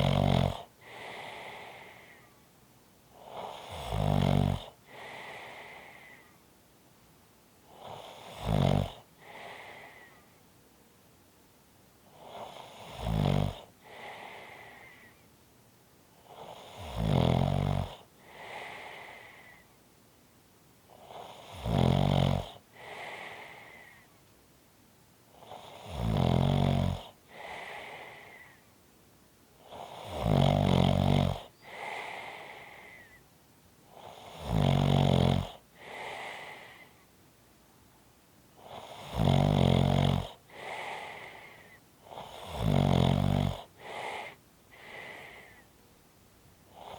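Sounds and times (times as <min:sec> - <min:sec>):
person snoring: 0:00.0 - 0:02.3, 0:03.2 - 0:06.3, 0:07.7 - 0:10.2, 0:12.1 - 0:15.2, 0:16.2 - 0:19.6, 0:20.9 - 0:24.1, 0:25.4 - 0:28.6, 0:29.6 - 0:33.2, 0:33.9 - 0:37.0, 0:38.6 - 0:45.7
whistling breath: 0:31.5 - 0:33.3.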